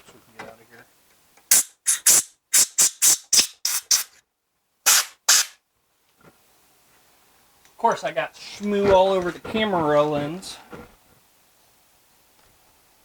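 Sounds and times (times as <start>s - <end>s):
compressed air blow gun hissing: 1.5s - 4.2s, 4.9s - 5.6s.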